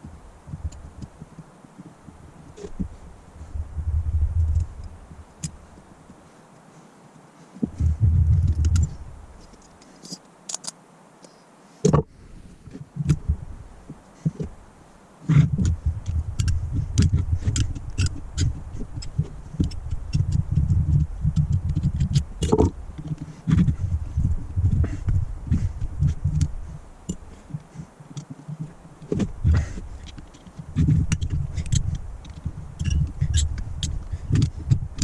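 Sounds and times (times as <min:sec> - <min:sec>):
low rumbling handling noise: 0:00.0 - 0:06.2, 0:07.6 - 0:09.6, 0:15.3 - 0:35.0.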